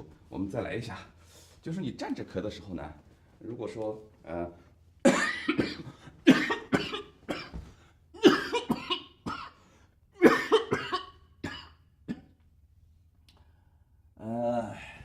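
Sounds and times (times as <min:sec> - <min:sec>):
man coughing hard: 0:05.0 - 0:09.6, 0:10.2 - 0:12.3.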